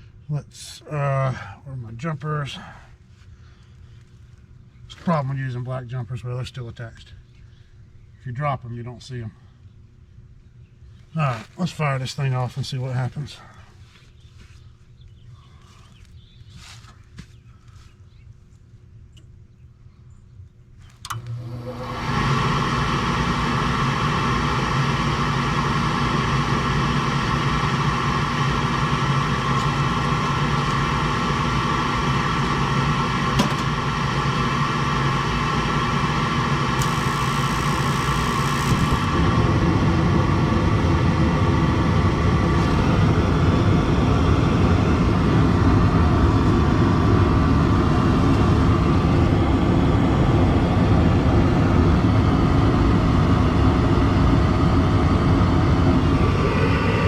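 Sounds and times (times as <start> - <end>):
inducer motor humming: 14.1 - 57.0
gas burners rumbling: 18.8 - 57.0.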